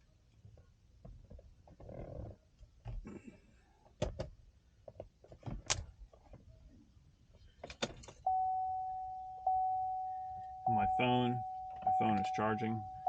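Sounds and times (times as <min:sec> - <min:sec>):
vehicle warning chime: 0:08.3 - 0:13.0.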